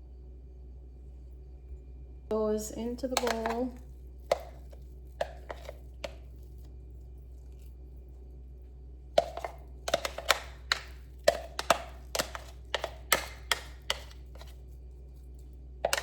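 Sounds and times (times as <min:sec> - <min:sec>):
utensil knocking against container: 0:03.2 - 0:04.6, 0:05.2 - 0:06.2, 0:09.2 - 0:14.5.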